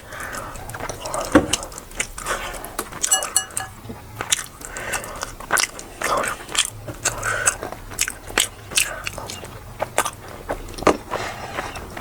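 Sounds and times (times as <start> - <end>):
person chewing food: 0.0 - 12.0
ringing clink: 3.1 - 3.8.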